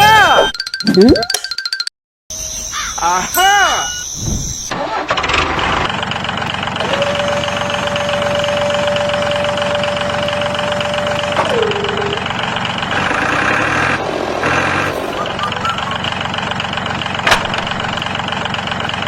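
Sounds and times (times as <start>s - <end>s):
vehicle engine running: 4.7s - 19.0s.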